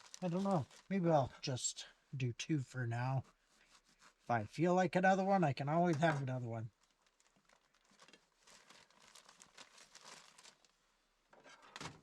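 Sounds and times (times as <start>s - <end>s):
plastic bag crinkling: 0.0s - 1.0s, 6.0s - 10.8s.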